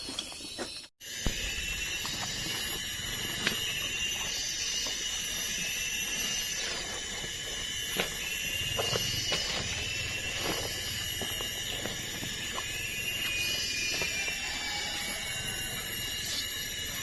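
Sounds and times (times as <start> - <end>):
insects buzzing: 0.3 - 17.0.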